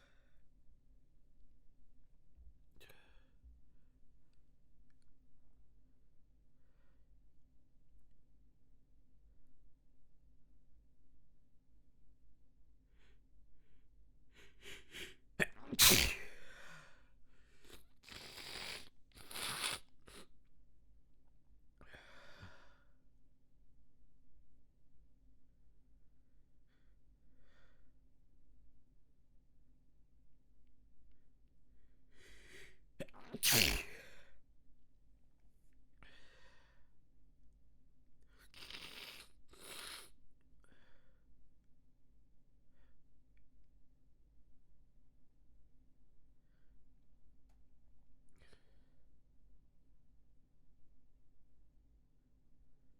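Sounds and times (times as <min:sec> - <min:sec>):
quiet breathy sounds: 0:00.0 - 0:00.7, 0:02.7 - 0:04.4, 0:48.3 - 0:49.2
person sneezing: 0:14.4 - 0:16.6, 0:33.0 - 0:34.2.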